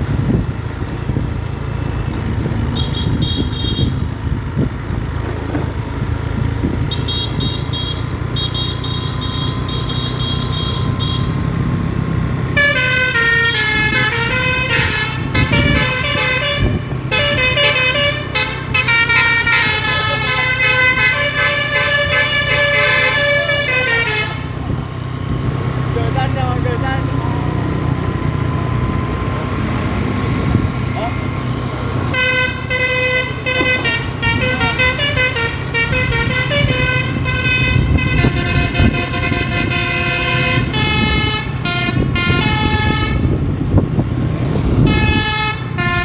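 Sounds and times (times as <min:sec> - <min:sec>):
bus engine running: 0:00.0 - 0:46.0
bus horn playing melody: 0:02.7 - 0:04.1, 0:06.6 - 0:11.7, 0:12.4 - 0:24.9, 0:32.0 - 0:43.9, 0:44.7 - 0:46.0.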